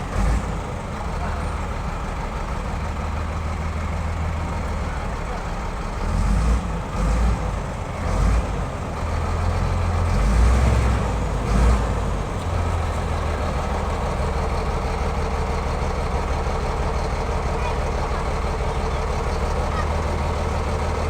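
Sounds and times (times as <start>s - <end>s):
heavy equipment engine running: 0.0s - 21.0s.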